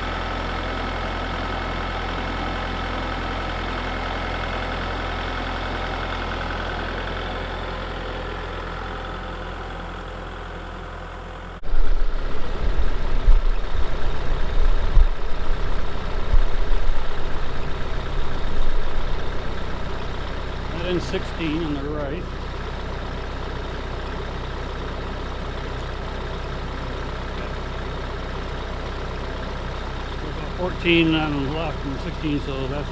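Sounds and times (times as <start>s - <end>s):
tractor diesel engine running: 0.0s - 32.9s.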